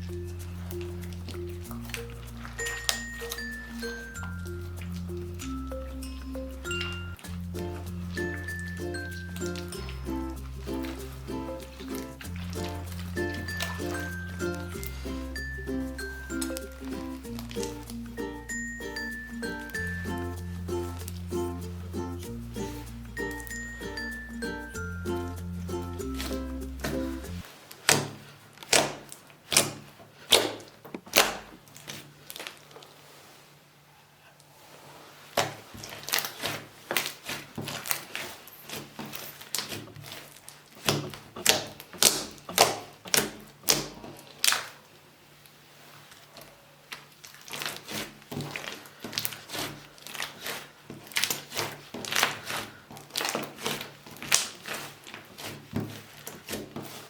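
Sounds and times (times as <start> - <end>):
slime clicking and popping: 40.8 - 44.8, 54.2 - 54.7.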